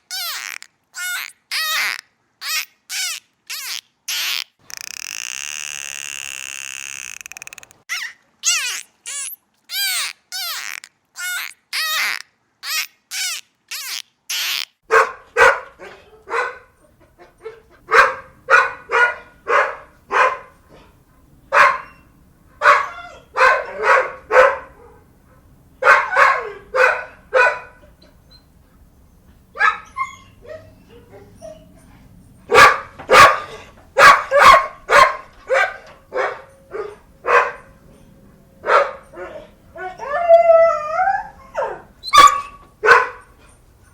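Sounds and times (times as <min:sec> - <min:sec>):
animal high-pitched calls: 0:00.0 - 0:14.8
dog barking: 0:14.9 - 0:16.8, 0:17.5 - 0:20.6, 0:21.5 - 0:22.0, 0:22.6 - 0:25.0, 0:25.8 - 0:27.8, 0:29.6 - 0:29.9, 0:32.5 - 0:37.7, 0:38.6 - 0:39.5, 0:41.6 - 0:43.3.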